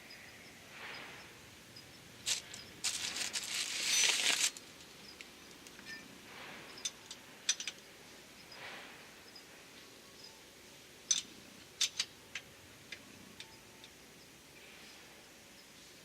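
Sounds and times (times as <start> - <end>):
crinkling rustling handling noise: 2.2 - 5.0.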